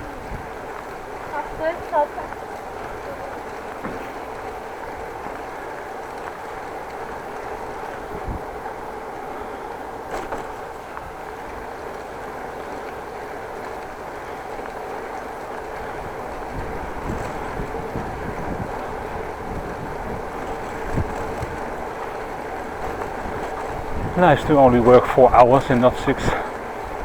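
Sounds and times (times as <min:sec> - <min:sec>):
wind on microphone: 0:00.0 - 0:05.3, 0:07.6 - 0:08.7, 0:15.6 - 0:27.0
bicycle tyres rumbling on road: 0:00.0 - 0:27.0.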